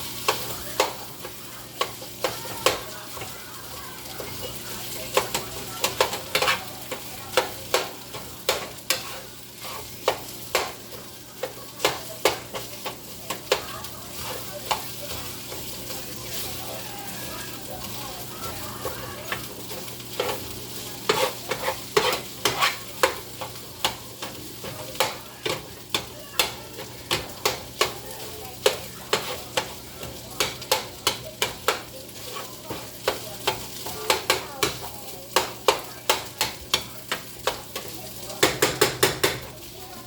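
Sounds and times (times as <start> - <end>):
meat sizzling in a frying pan: 0.0 - 40.0
utensil knocking against pan: 1.8 - 3.3, 5.1 - 9.2, 10.0 - 15.6, 21.1 - 28.0, 28.6 - 31.9, 32.7 - 34.8, 35.4 - 39.5.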